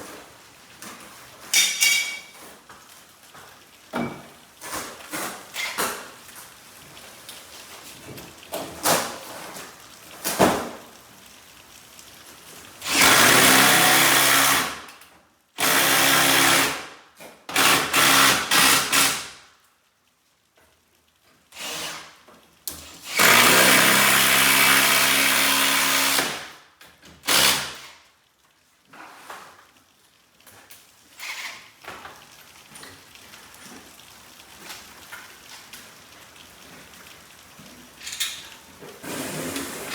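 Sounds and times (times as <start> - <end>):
power drill driving fasteners: 12.8 - 14.7, 15.6 - 16.8, 17.5 - 19.3, 21.6 - 22.2, 22.8 - 26.5, 27.2 - 28.0, 31.2 - 31.7.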